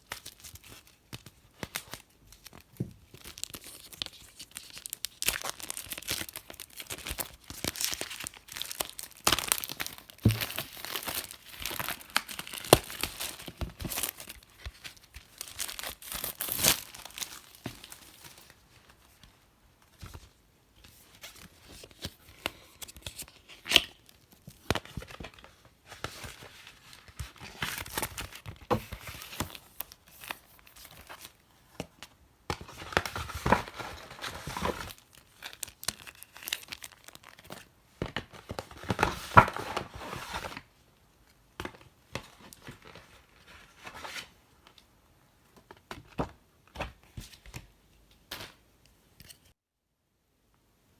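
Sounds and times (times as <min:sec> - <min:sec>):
packaging crinkling: 0:00.3 - 0:18.6, 0:32.8 - 0:37.7
packaging ripping: 0:03.2 - 0:17.6.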